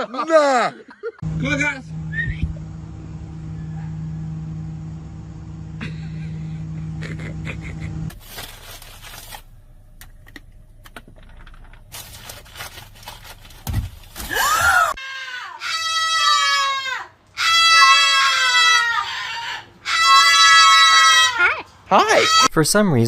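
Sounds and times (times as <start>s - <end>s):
steady hum: 1.2s - 15.0s
animal crying out: 14.3s - 22.5s
animal squeal: 14.9s - 22.5s.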